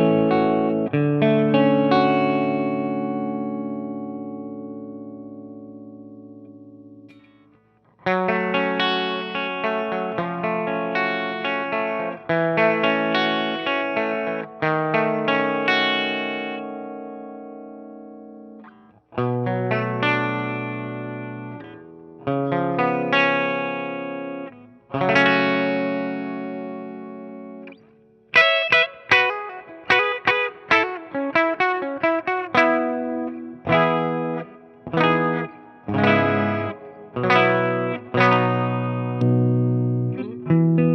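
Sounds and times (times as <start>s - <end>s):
choppy electric guitar chords: 0.0s - 40.9s
clean electric guitar chords: 0.0s - 40.9s.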